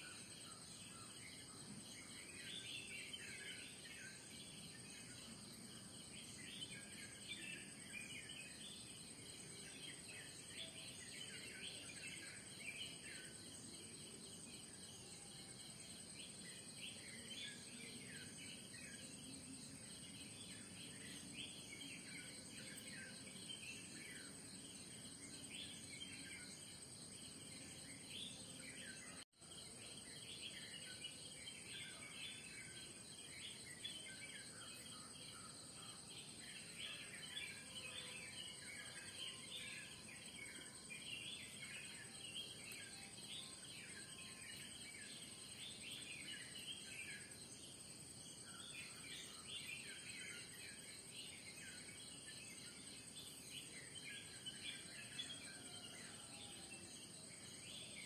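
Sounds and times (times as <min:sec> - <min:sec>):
high-pitched insect trill: 0:00.0 - 0:58.0.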